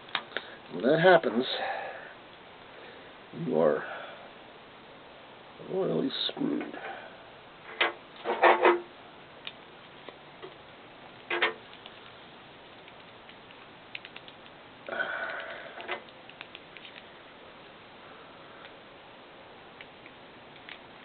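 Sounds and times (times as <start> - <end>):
handling noise: 11.2 - 13.4.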